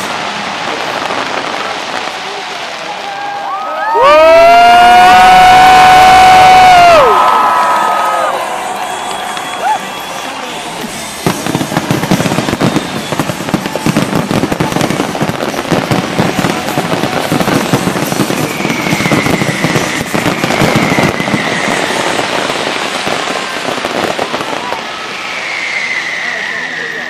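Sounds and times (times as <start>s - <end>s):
fireworks bangs and crackles: 0.0s - 27.0s
falling firework whistle: 3.0s - 27.0s.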